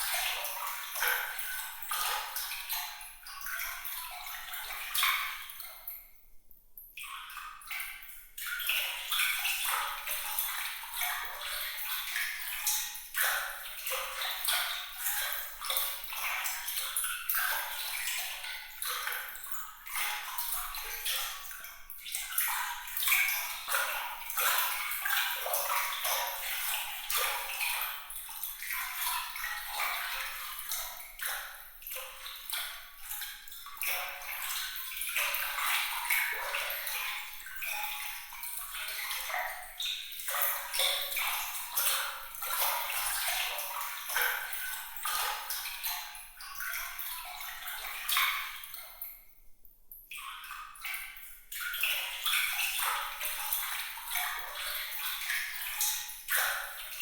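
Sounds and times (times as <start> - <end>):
water trickling and splashing: 0.0 - 6.2, 6.8 - 49.4, 50.0 - 57.0.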